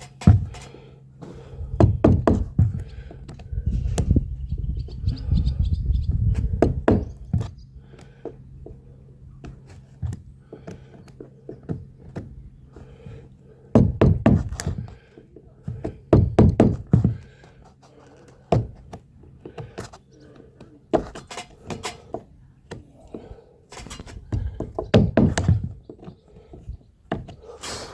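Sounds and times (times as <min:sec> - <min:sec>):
hand tools knocking on wood: 0:01.8 - 0:03.4, 0:06.6 - 0:07.6, 0:13.7 - 0:15.0, 0:15.6 - 0:17.2, 0:23.8 - 0:27.4.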